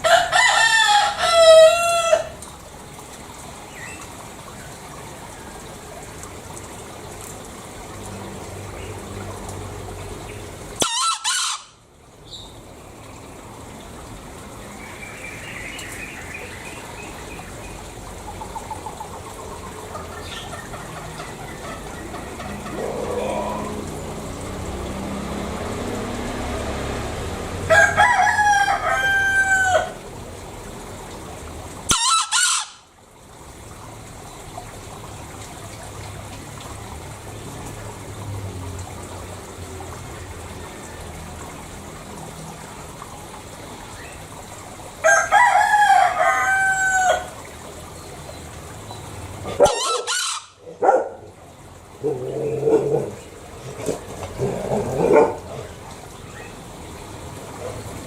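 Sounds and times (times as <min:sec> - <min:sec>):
junglefowl crowing: 0:00.0 - 0:02.4, 0:10.8 - 0:11.8, 0:19.9 - 0:23.8, 0:27.7 - 0:30.0, 0:31.9 - 0:32.9, 0:45.0 - 0:47.4, 0:49.5 - 0:51.0.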